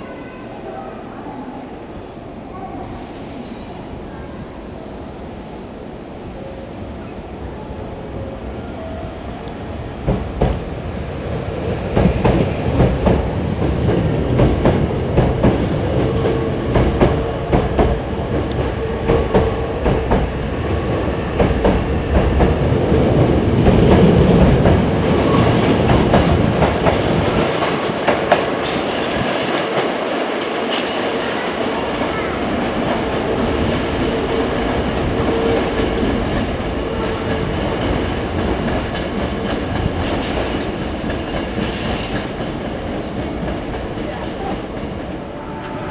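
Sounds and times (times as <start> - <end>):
train rumble: 0.0 - 45.9
train wheels clickety-clack: 9.4 - 45.8.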